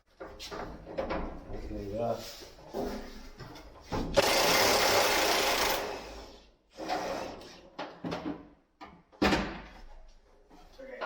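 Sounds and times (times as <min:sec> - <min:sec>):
power tool rattling: 0:04.2 - 0:06.1.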